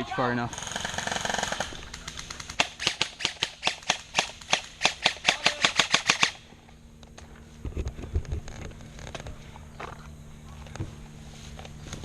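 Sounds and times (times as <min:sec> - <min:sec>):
airsoft gun rapid shots: 0:00.5 - 0:06.4.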